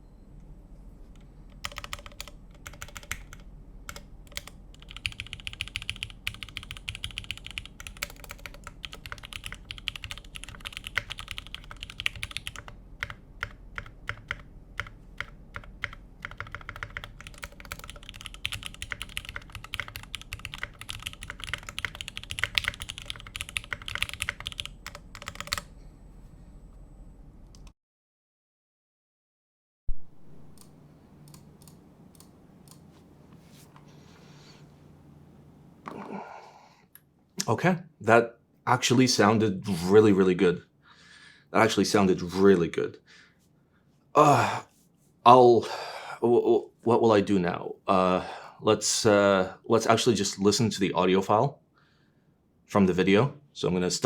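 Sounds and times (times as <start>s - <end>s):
typing on computer keyboard: 1.5s - 25.7s.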